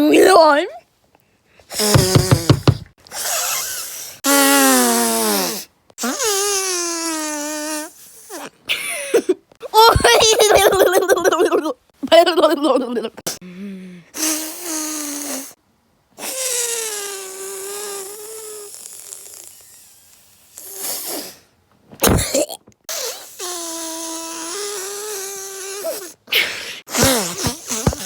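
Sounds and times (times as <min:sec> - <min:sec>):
person sniffing: 0:03.1 - 0:08.5, 0:14.2 - 0:15.6, 0:20.6 - 0:21.5, 0:22.9 - 0:28.0.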